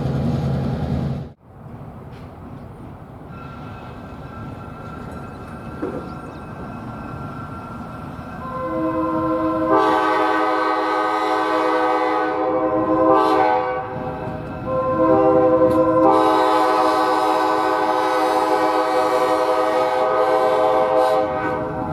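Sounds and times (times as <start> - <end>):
locomotive rumbling: 0.0 - 21.9
train air horn chord: 8.4 - 14.1, 14.7 - 21.8.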